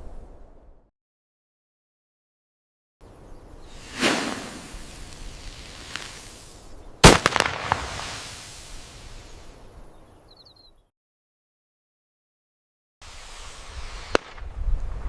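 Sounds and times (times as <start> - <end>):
dynamite explosion: 3.7 - 9.5
explosion rumble: 3.8 - 9.0
quick cracks: 3.8 - 9.1.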